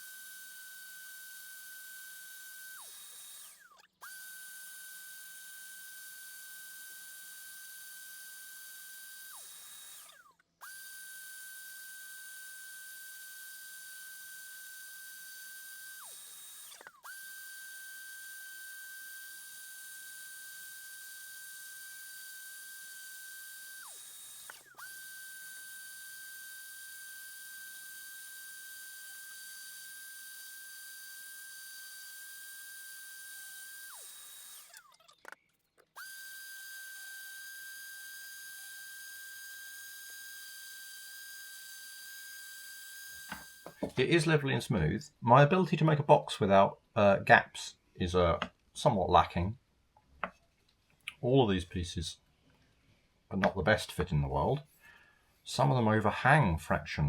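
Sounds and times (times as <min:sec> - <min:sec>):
sander motor whining: 0:00.0 - 0:44.3.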